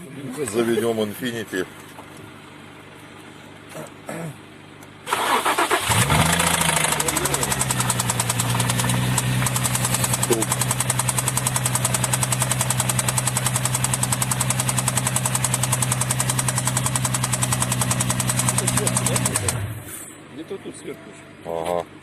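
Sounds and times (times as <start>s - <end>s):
car engine cranking and starting: 5.0s - 20.0s
engine idling with rapid knock: 5.9s - 19.8s.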